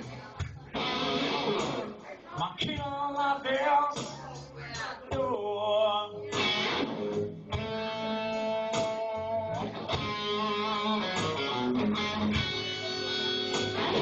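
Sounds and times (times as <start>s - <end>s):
band music: 0.0s - 14.0s
person singing: 0.0s - 14.0s
electric guitar fill: 0.8s - 2.0s, 6.2s - 14.0s.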